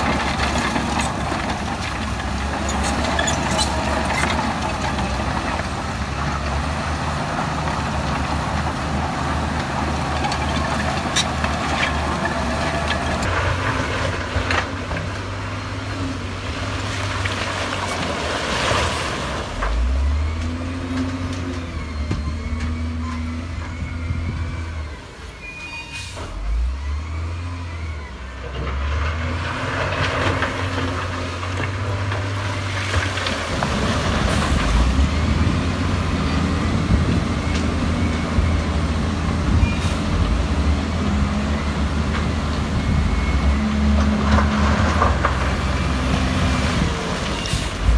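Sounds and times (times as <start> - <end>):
diesel machinery engines revving: 0.0 - 47.9
faint high squeals: 21.6 - 28.2.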